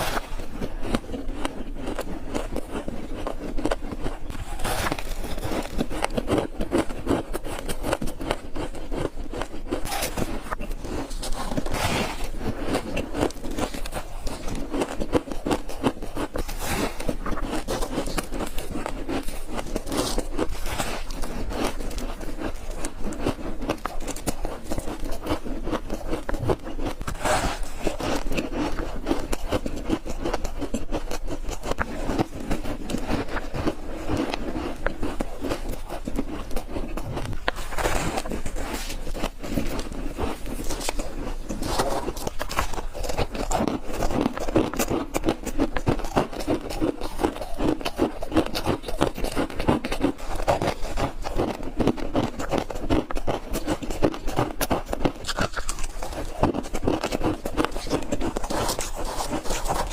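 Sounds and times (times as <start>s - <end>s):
ice being chewed: 0.0s - 59.9s.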